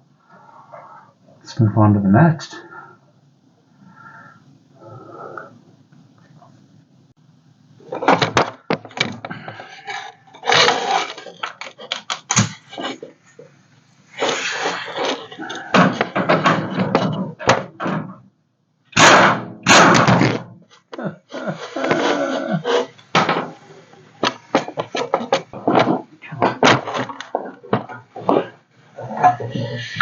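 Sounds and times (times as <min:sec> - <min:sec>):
hand tools and metal clattering: 0:07.9 - 0:13.5.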